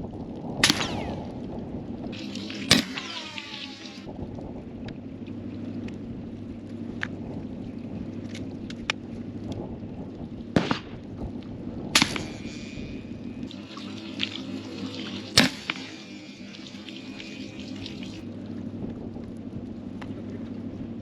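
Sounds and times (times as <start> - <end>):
steady low rumble: 0.0 - 21.0
suppressed gunshots: 0.6 - 1.3, 10.6 - 11.0, 12.0 - 12.8, 15.4 - 16.0.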